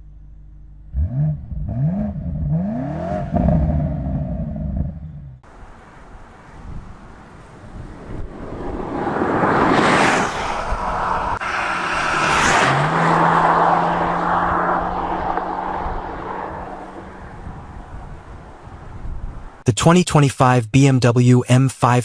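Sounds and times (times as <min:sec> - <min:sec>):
car driving past: 0:05.6 - 0:18.7.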